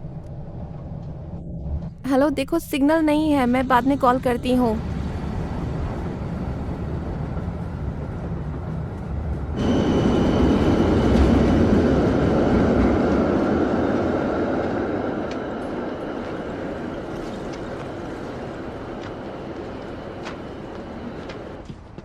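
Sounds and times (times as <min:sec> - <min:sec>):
train rumbling on rails: 0:03.0 - 0:22.0
faint high whine: 0:09.6 - 0:21.6.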